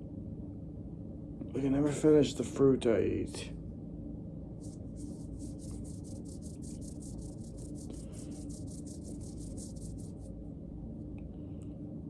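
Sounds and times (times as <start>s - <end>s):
steady low hum: 0.0s - 12.0s
quick scraping strokes: 4.6s - 10.3s.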